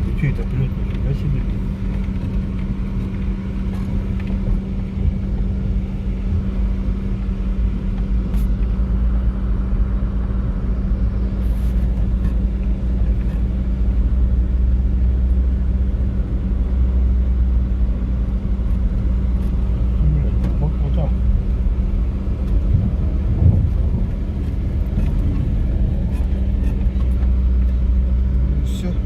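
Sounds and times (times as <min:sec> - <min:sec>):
road rumble: 0:00.0 - 0:29.0
vehicle engine hum: 0:00.0 - 0:29.0.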